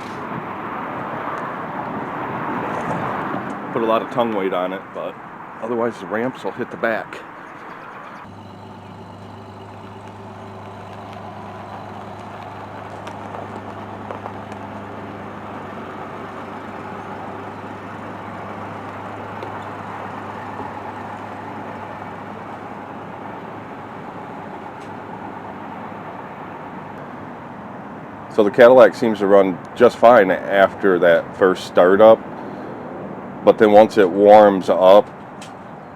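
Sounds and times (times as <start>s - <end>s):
vehicle engine idling: 5.0s - 33.1s.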